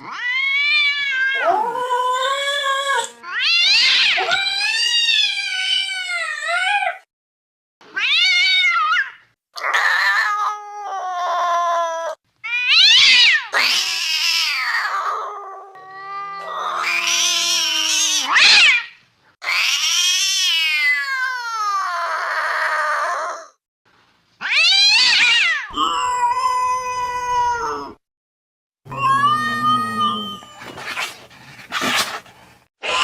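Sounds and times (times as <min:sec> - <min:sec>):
cat-like creature yowling: 0:28.9 - 0:30.8.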